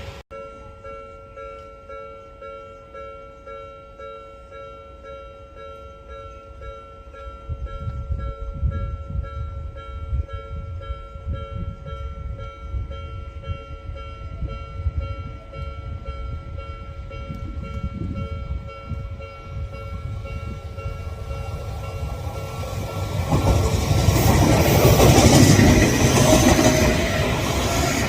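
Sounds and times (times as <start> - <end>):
approaching train: 0.0 - 28.0
level crossing warning bell: 0.3 - 27.6.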